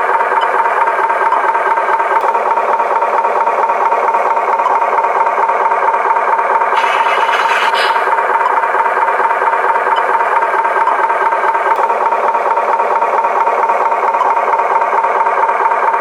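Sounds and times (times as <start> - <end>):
toy truck whirring and rattling: 6.5 - 9.1.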